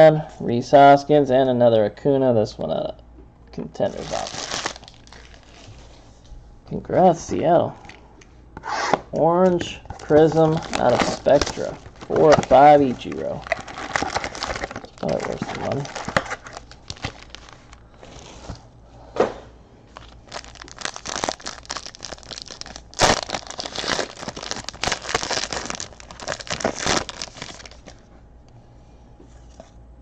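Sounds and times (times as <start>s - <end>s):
foil wrapper tearing and crinkling: 3.9s - 5.7s, 10.0s - 18.4s, 20.0s - 28.0s.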